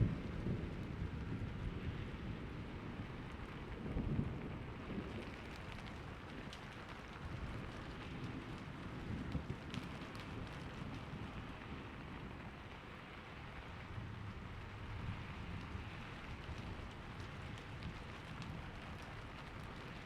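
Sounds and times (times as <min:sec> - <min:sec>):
low rolling thunder: 0:00.0 - 0:05.4
steady rain: 0:00.0 - 0:20.0
raindrops ticking: 0:15.3 - 0:20.0.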